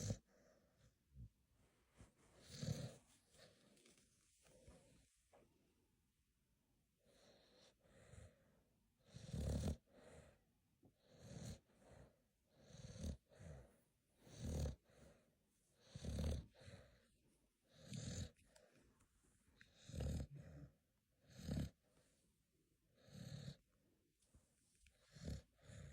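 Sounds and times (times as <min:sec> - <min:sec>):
dog snoring: 0:00.0 - 0:00.5, 0:02.3 - 0:03.5, 0:07.1 - 0:10.4, 0:11.0 - 0:15.2, 0:15.8 - 0:17.1, 0:17.7 - 0:18.4, 0:19.6 - 0:21.9, 0:23.0 - 0:23.7, 0:25.0 - 0:25.9.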